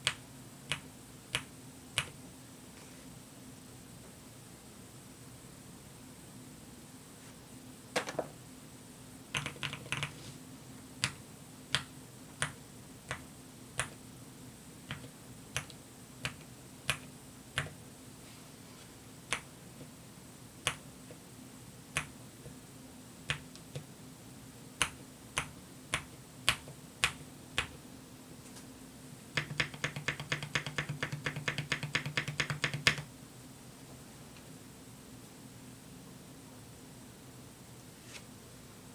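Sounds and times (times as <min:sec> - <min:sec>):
fast continuous typing: 0:09.3 - 0:10.1, 0:29.4 - 0:33.1.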